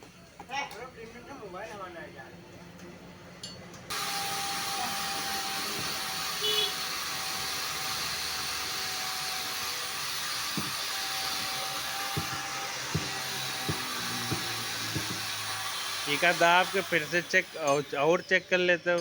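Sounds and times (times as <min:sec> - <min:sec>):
tyre-repair tool whining: 0:03.9 - 0:18.6
light knocks: 0:12.1 - 0:15.3.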